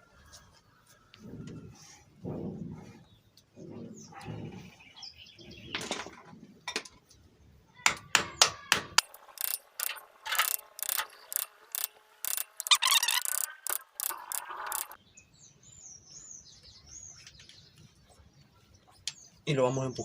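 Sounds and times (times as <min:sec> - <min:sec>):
hand tool clicking on metal: 0:09.0 - 0:15.0.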